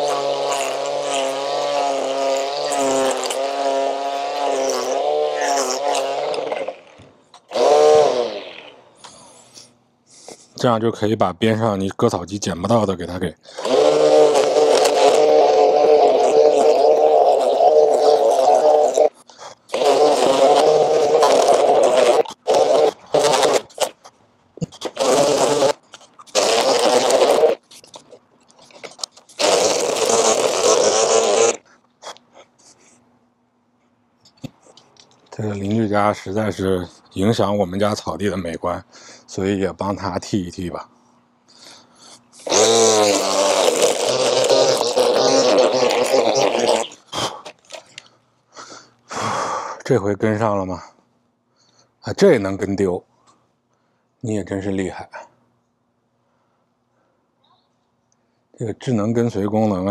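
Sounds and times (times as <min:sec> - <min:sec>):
string trimmer cutting grass: 0:00.0 - 0:09.0, 0:13.5 - 0:24.0, 0:24.6 - 0:28.0, 0:42.4 - 0:47.0.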